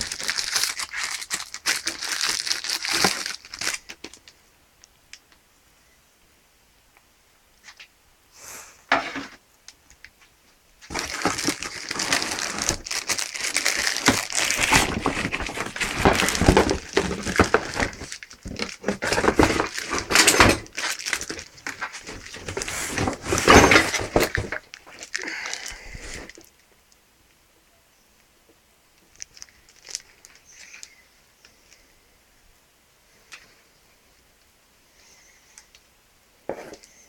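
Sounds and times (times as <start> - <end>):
packaging crinkling and rustling: 0.0 - 4.4, 10.8 - 26.5, 29.1 - 31.0.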